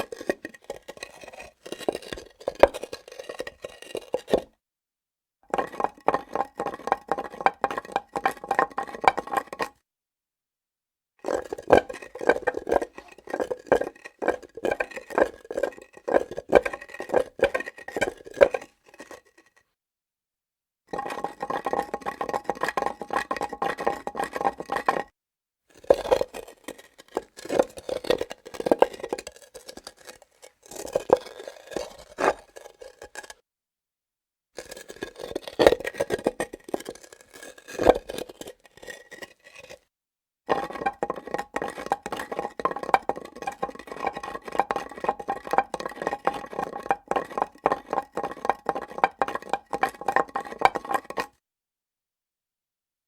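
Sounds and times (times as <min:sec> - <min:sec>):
hard objects scraping on stone: 0:00.0 - 0:04.5, 0:05.5 - 0:09.8, 0:11.2 - 0:19.6, 0:20.9 - 0:25.1, 0:25.7 - 0:33.4, 0:34.6 - 0:39.9, 0:40.5 - 0:51.3.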